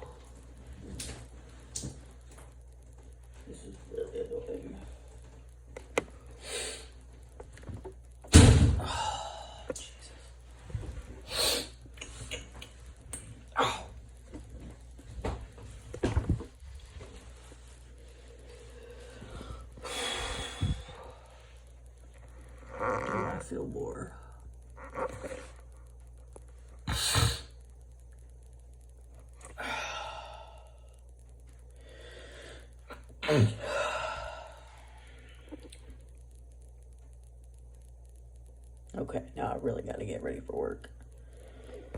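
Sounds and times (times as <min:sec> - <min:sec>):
person sneezing: 0:26.9 - 0:27.6.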